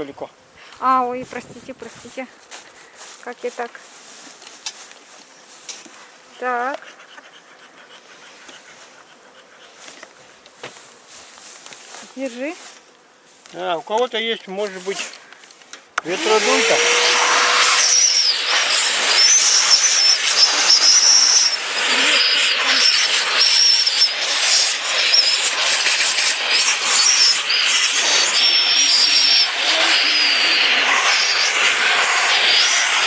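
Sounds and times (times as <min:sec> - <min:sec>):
vacuum blower rushing and whining: 0:16.0 - 0:33.0.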